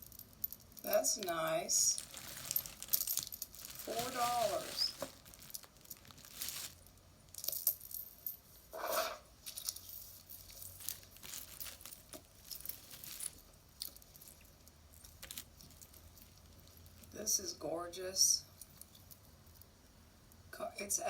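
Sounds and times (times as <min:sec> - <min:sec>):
jewelry clinking and rattling: 0:00.0 - 0:17.2, 0:18.4 - 0:19.7
light rustling: 0:02.0 - 0:06.8, 0:09.5 - 0:14.4.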